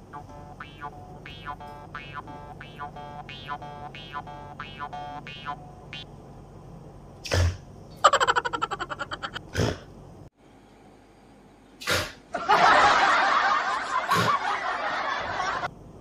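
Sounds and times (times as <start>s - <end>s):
rippling snicker: 8.0s - 9.5s, 12.4s - 15.7s.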